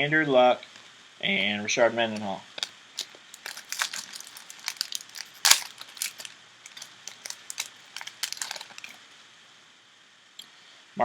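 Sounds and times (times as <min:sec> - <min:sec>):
cards rustling: 0:02.6 - 0:09.0
foil wrapper crinkling: 0:02.6 - 0:09.0.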